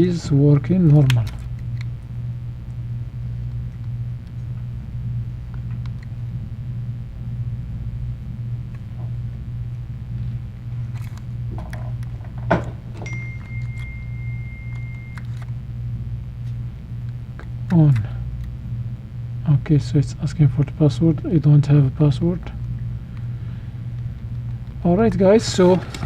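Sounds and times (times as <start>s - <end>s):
low background hum: 0.0s - 26.0s
faint high-pitched tone: 13.0s - 15.3s.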